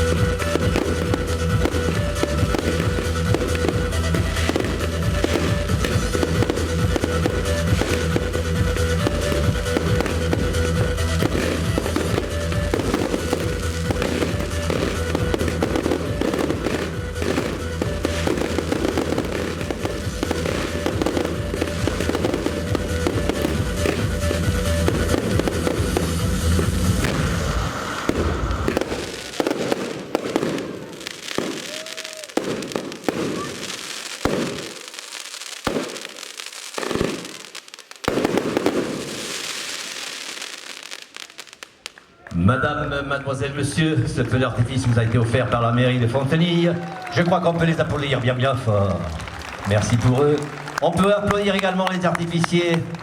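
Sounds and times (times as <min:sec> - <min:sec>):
loud music over sound system: 0:00.0 - 0:30.4
fireworks bursting and crackling: 0:00.0 - 0:53.0.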